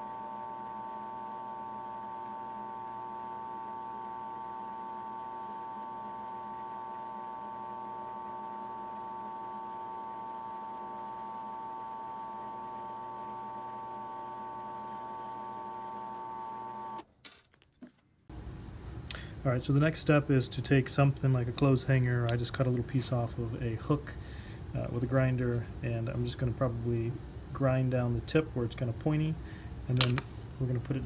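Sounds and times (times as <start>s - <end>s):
electric drill whining: 0.0s - 17.0s.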